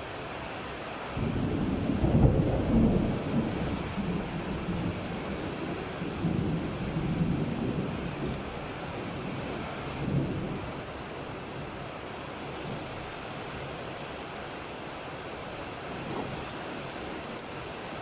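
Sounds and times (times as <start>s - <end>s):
rain hissing: 0.0s - 18.0s
low rumble of thunder: 1.2s - 11.7s.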